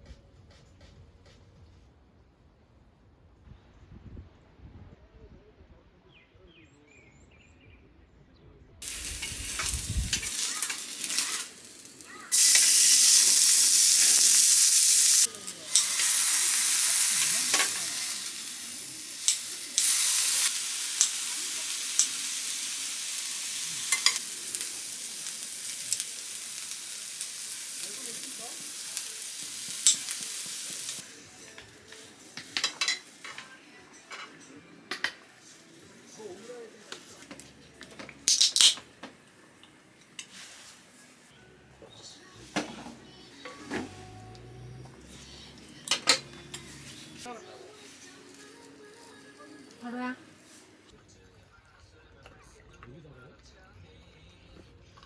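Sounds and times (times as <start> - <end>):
food sizzling in a hot pan: 8.8 - 34.3, 34.9 - 37.6, 40.2 - 41.3, 42.4 - 50.9.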